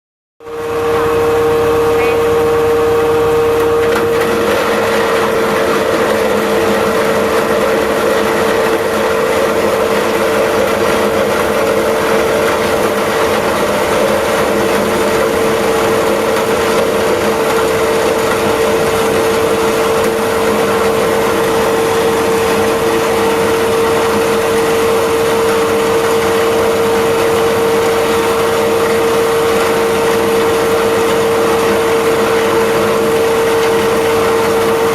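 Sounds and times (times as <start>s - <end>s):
crusher mill whine and grinding: 0.4s - 34.9s.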